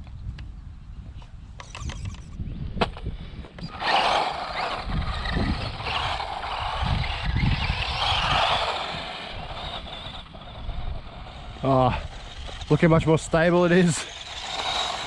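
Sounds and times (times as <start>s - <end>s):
tyres on gravel: 3.0s - 15.0s
wavering electric motor whine: 3.6s - 15.0s.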